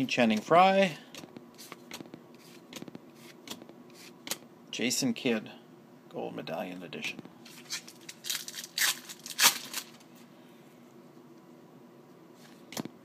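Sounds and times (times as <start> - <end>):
wrapper crinkling and tearing: 7.5 - 10.1.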